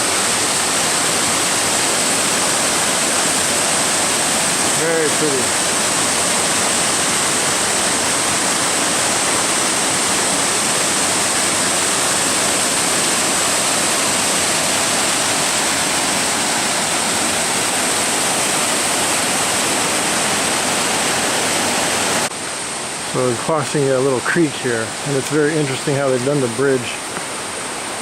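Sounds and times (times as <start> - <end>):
waterfall rushing onto rocks: 0.0 - 28.0.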